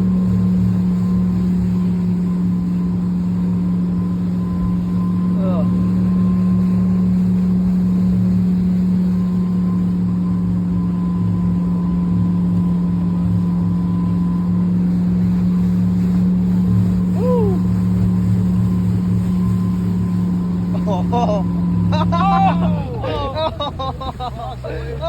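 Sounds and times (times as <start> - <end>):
motorboat engine droning: 0.0 - 25.0
person crying out: 17.2 - 17.7, 20.8 - 23.8.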